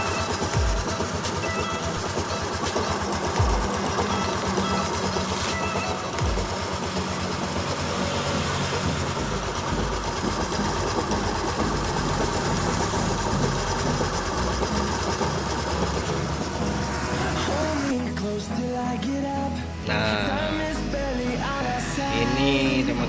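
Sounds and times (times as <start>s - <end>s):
scooter engine clattering roughly: 0.0s - 18.0s.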